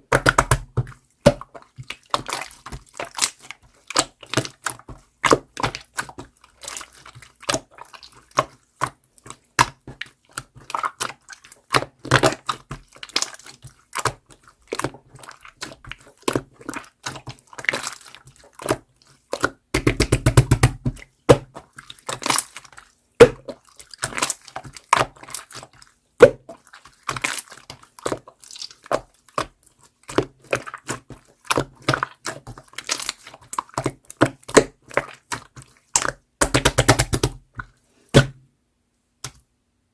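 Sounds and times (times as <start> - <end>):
slime popping when squeezed: 36.0 - 37.4.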